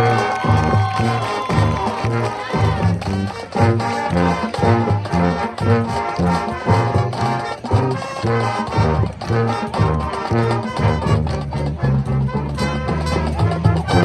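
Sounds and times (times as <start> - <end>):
low brass: 0.0 - 14.0
marching band playing: 0.0 - 14.0.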